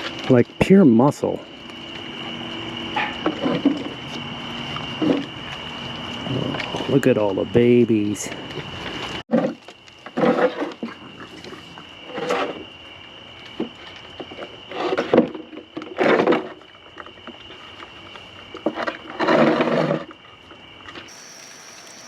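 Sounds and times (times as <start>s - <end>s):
raccoons growling and snarling: 3.1s - 7.1s, 10.2s - 12.6s.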